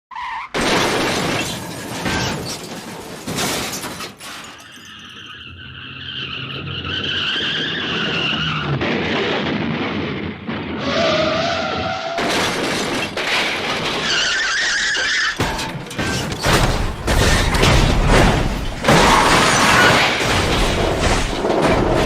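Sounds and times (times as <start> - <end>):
glass shattering: 0.6 - 5.5, 12.2 - 22.0
crashing impacts: 0.6 - 5.6, 11.7 - 22.0
debris clattering: 0.6 - 5.6, 12.2 - 22.0
tyres squealing: 1.4 - 8.8, 10.8 - 22.0.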